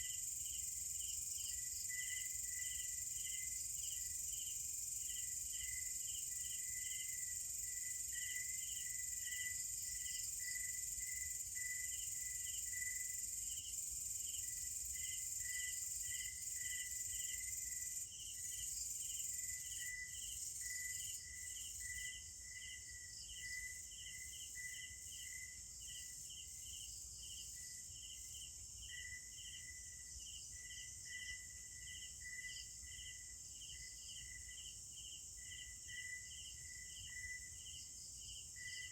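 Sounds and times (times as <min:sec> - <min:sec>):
insect chirping: 0:00.0 - 0:38.9.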